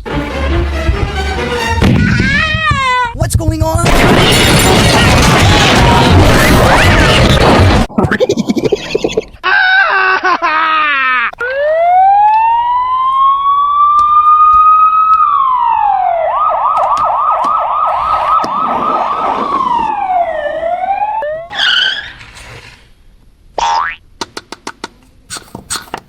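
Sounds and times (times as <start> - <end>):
electronic siren wailing and yelping: 11.4 - 22.2
brief squeak: 21.5 - 22.7.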